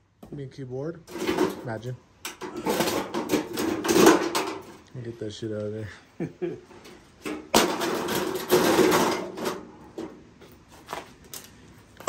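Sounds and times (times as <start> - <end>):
microwave parts rattling and scraping: 1.1 - 4.9, 6.7 - 11.6.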